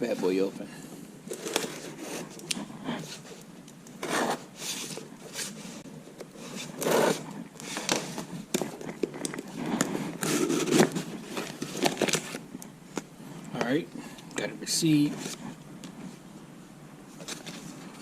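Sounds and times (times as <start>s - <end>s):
package tearing and scraping: 6.4s - 12.4s
packing material crinkling: 6.4s - 12.6s.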